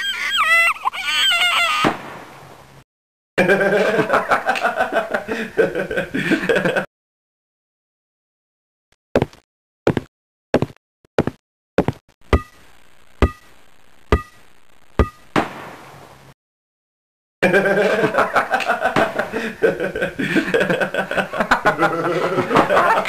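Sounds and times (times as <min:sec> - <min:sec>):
laughter: 0:03.4 - 0:06.9, 0:17.4 - 0:23.0
sharp knocks with ringing tone: 0:14.1 - 0:14.4, 0:15.0 - 0:15.4.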